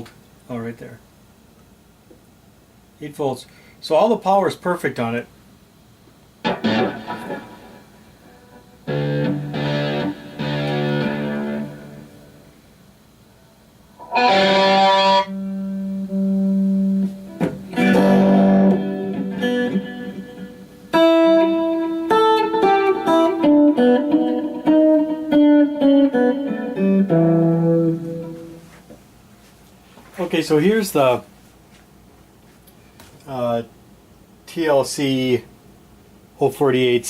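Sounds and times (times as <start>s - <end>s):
electric guitar single notes: 6.4s - 12.5s, 14.0s - 28.8s
electric guitar chords: 6.4s - 12.6s, 14.0s - 28.8s.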